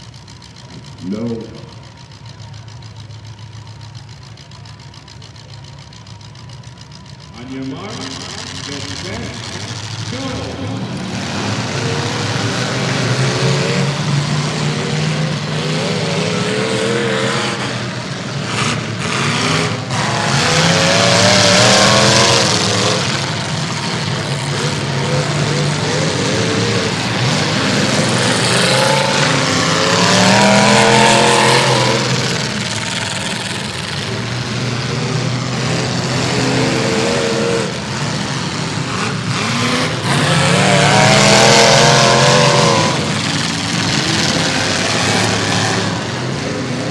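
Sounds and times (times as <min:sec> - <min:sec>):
car engines revving: 0:00.0 - 0:46.9.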